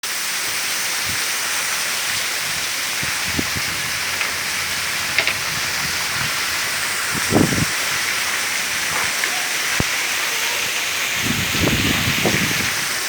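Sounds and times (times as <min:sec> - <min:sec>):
heavy rain pouring: 0:00.0 - 0:13.0
faint knocks of drips: 0:03.1 - 0:10.0.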